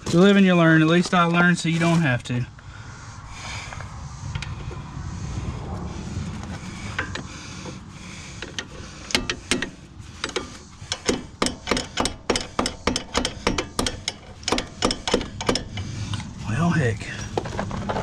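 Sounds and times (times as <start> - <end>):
hand ratchet clicking: 8.4 - 16.3.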